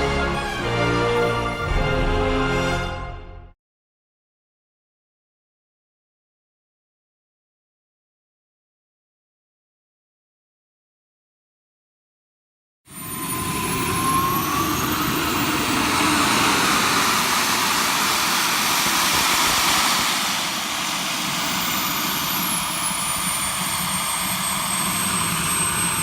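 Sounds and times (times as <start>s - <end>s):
model jet turbine roaring: 12.9s - 26.0s
turbine high-pitched whine: 12.9s - 26.0s.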